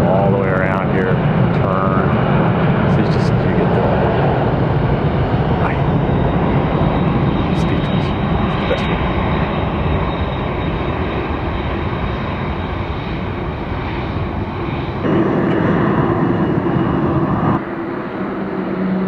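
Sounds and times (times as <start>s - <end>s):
jet engines roaring at takeoff: 0.0s - 19.0s.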